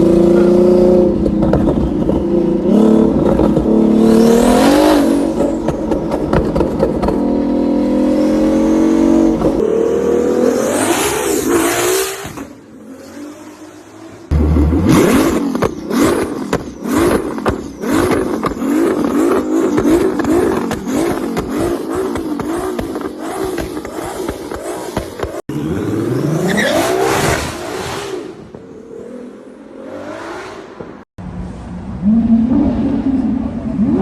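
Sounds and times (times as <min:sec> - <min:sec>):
car engine revving: 0:00.0 - 0:31.1.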